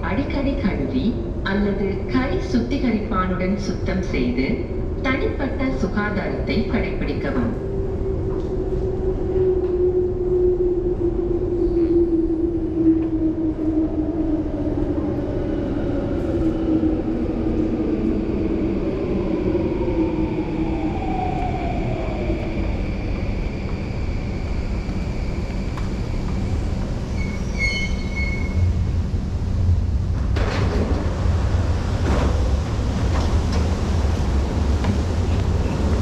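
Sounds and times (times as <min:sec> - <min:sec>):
train wheels rumbling on rail: 0:20.7 - 0:36.0
high-pitched train squeal: 0:27.1 - 0:28.7.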